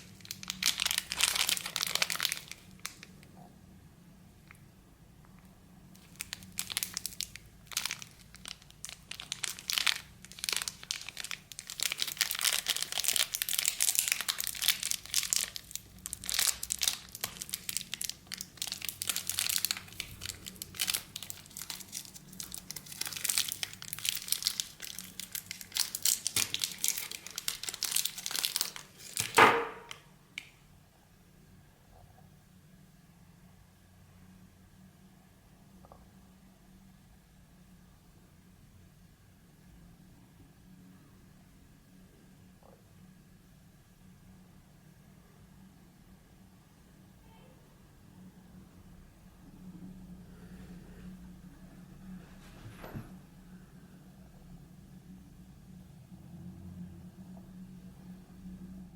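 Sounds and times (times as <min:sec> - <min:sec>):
plastic wrapper crinkling: 0:00.0 - 0:03.3, 0:05.9 - 0:30.5.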